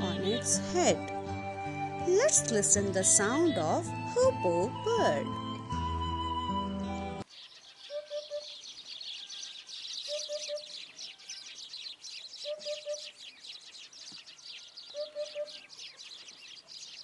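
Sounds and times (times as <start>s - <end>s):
hoopoe hooting call: 0.0s - 7.2s, 7.9s - 8.6s, 10.0s - 10.8s, 12.4s - 13.2s, 14.9s - 15.7s
small birds chirping: 0.0s - 17.0s.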